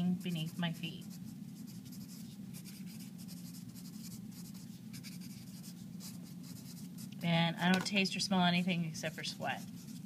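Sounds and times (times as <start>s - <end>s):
pen scratching on paper: 0.0s - 7.1s
steady low hum: 0.0s - 10.0s.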